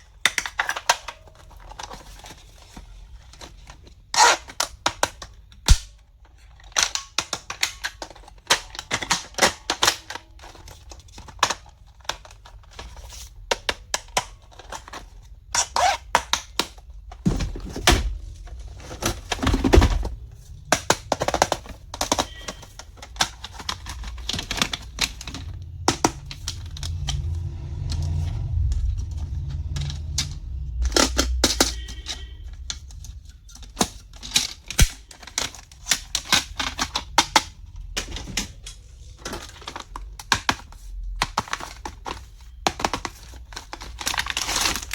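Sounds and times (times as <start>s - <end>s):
plastic items clicking and tapping: 0.0s - 44.9s
low rumble: 23.8s - 33.2s.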